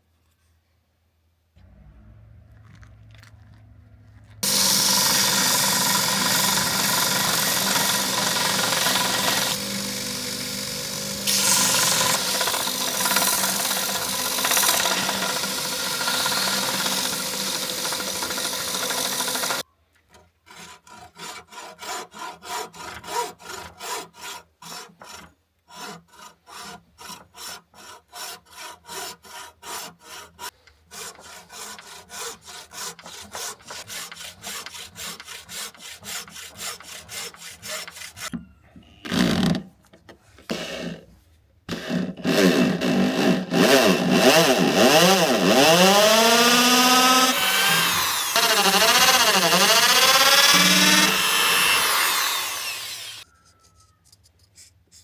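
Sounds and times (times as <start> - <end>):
steady machine noise: 3.9 - 19.6
power tool whirring: 4.4 - 19.6, 40.5 - 41.1, 41.7 - 53.3
hand tool stroking metal: 20.5 - 38.4.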